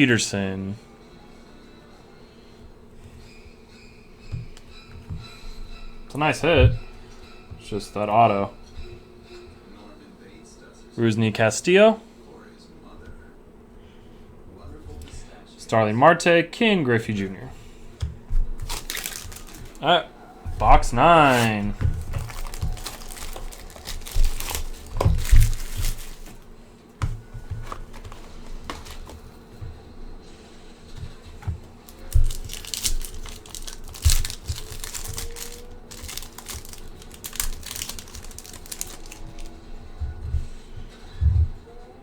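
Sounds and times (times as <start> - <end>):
packaging crinkling and tearing: 18.6 - 19.8, 20.7 - 26.5, 27.6 - 29.3, 31.8 - 39.5
handling knocks and clicks: 20.5 - 29.8, 31.0 - 40.5.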